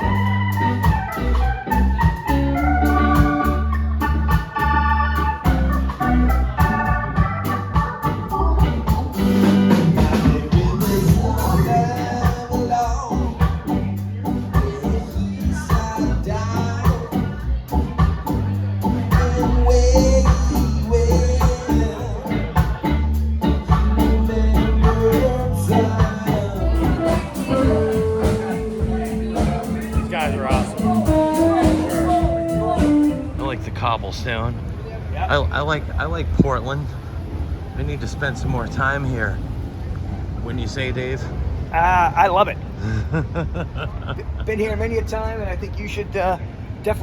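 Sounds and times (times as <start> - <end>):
steady drum beat: 0.0 - 33.6
organ-like keyboard chords: 0.0 - 33.7
bass line: 0.0 - 34.6.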